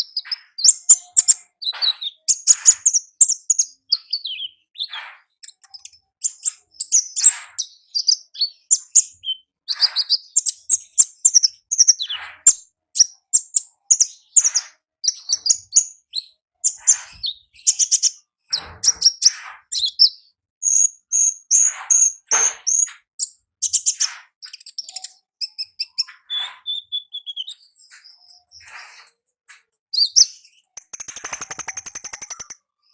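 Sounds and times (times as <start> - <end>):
songbird chirps and twitters: 30.8 - 32.6.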